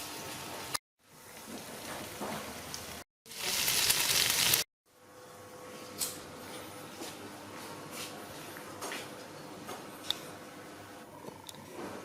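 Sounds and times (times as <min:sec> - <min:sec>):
sausages sizzling: 0:02.8 - 0:04.7.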